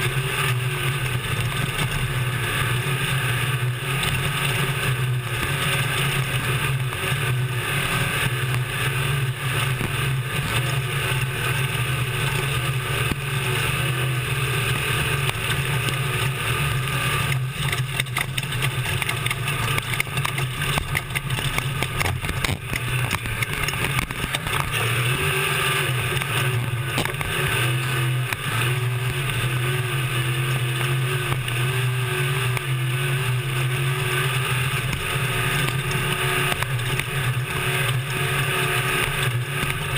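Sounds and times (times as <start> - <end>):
knocks and rattles from rough ground: 0.0 - 7.6, 15.0 - 29.6
road and wind noise: 0.0 - 39.9
truck engine running hard: 0.0 - 39.9.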